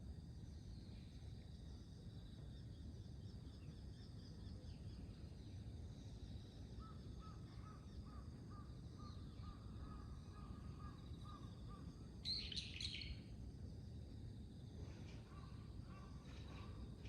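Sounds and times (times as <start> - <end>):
bird chirps: 8.6 - 13.2.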